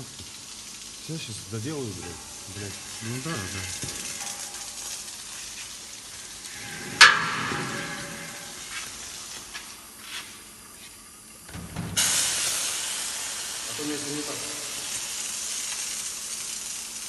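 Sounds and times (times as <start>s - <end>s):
steady low hiss: 0.0s - 17.0s
sharp metallic clank: 2.0s - 5.0s, 6.5s - 9.0s.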